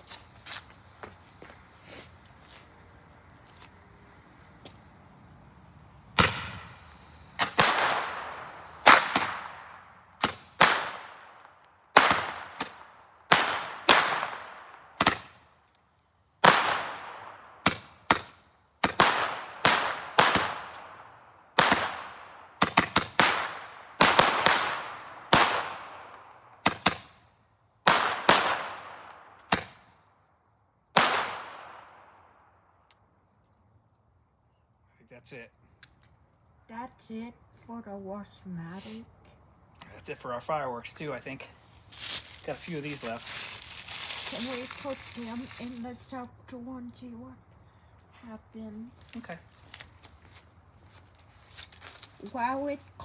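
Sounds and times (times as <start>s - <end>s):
firecrackers banging: 6.1s - 15.8s, 16.4s - 27.2s, 27.8s - 30.0s, 31.0s - 32.2s, 41.5s - 46.1s.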